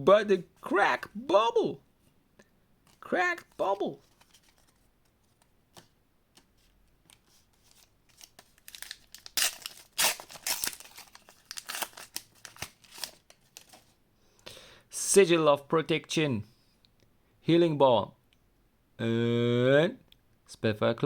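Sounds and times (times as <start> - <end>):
foil wrapper tearing and crinkling: 7.6 - 13.8.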